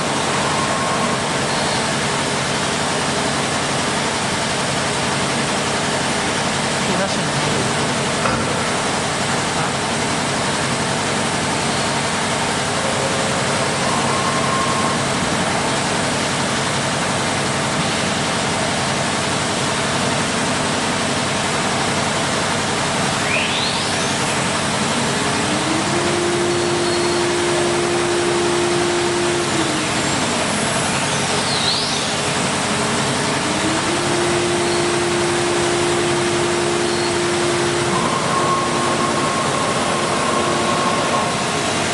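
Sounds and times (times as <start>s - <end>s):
wood router running: 23.7s - 41.9s
motor tone rising and falling: 24.9s - 30.6s, 31.4s - 41.9s.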